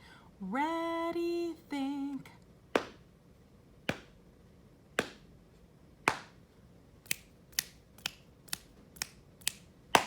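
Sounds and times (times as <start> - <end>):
hand patting thigh: 2.8 - 3.0, 3.9 - 4.2, 5.0 - 5.3, 6.0 - 6.4
finger snaps: 7.0 - 10.0.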